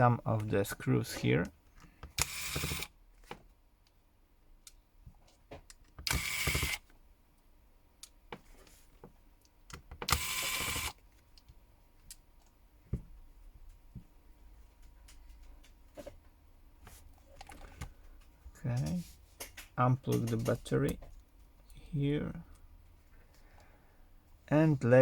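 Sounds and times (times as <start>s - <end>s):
electric screwdriver whirring: 2.1s - 2.9s, 6.0s - 6.8s, 10.0s - 11.0s
tools and screws clicking: 18.8s - 20.7s.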